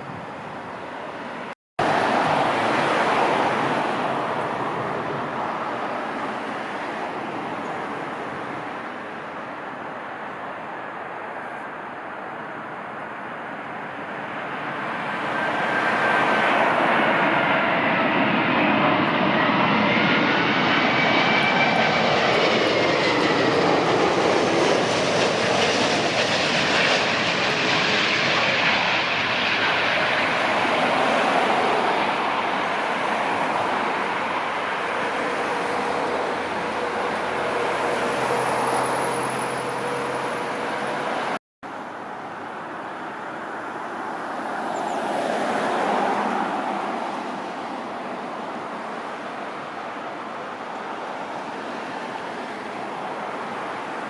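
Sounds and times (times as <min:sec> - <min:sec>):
jet airliner passing: 0:00.0 - 0:54.0.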